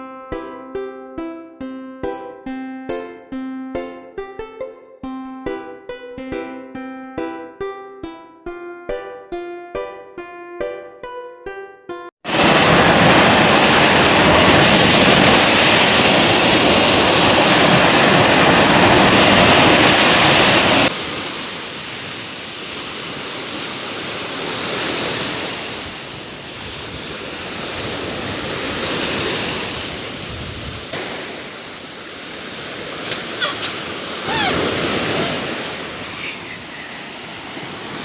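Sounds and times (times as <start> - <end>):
sea waves breaking: 12.2 - 38.0
wind buffeting microphone: 12.3 - 38.0.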